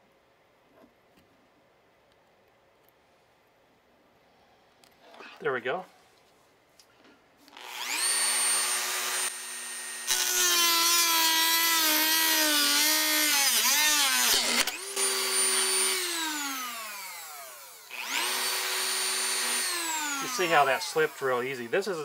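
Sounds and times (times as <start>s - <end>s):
rotary tool whine: 7.5s - 22.0s
cutoff disc grinding metal: 7.6s - 22.0s.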